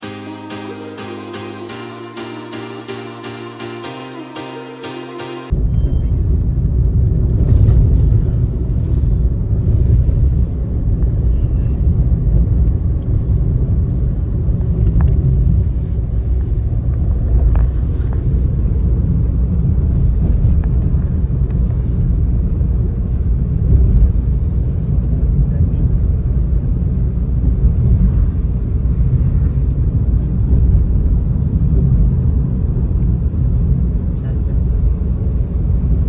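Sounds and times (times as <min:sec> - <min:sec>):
background music: 0:00.0 - 0:05.6
vehicle road rumble: 0:05.5 - 0:36.0.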